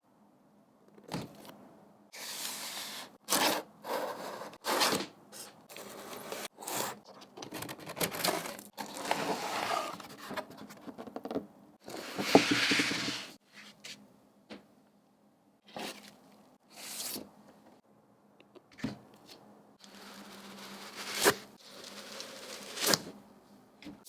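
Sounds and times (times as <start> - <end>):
packaging scraping and rustling: 4.2 - 10.9, 19.8 - 23.1.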